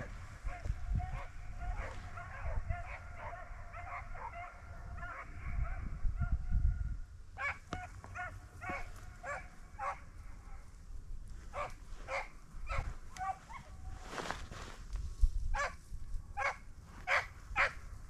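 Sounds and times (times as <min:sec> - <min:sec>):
dogs baying: 0:00.0 - 0:05.8, 0:07.4 - 0:10.7, 0:11.5 - 0:13.9, 0:16.4 - 0:17.8
wind rumble on microphone: 0:00.0 - 0:18.0.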